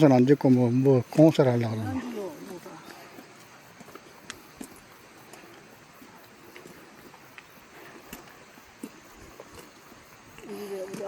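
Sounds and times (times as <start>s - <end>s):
footsteps outdoors: 0.0s - 11.0s
steady hiss: 0.0s - 11.0s.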